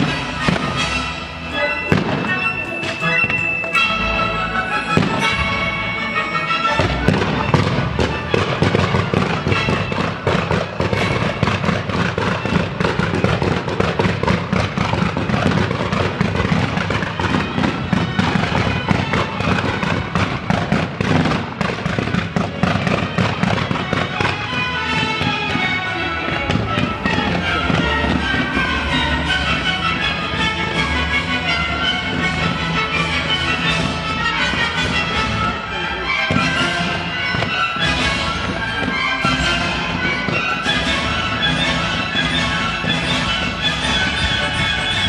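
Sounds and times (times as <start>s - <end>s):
loud music: 0.0s - 12.6s, 23.8s - 45.0s
fireworks bangs and crackling: 0.0s - 45.0s.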